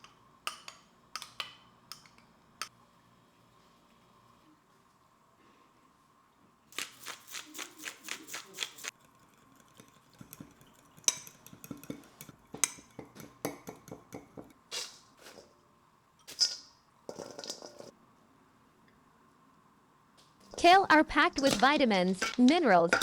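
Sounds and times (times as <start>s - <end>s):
utensil mixing in a bowl: 6.8s - 15.5s
utensil clinking against bowl: 8.6s - 14.6s, 21.4s - 23.0s.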